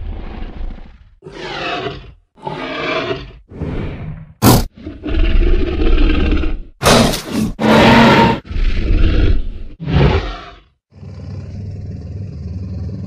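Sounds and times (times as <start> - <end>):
dinosaur roars: 0.0 - 13.0
low rumbling growl: 7.7 - 13.0.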